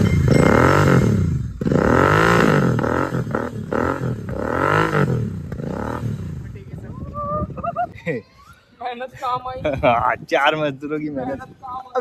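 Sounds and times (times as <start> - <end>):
motorcycle engine revving: 0.0 - 7.0.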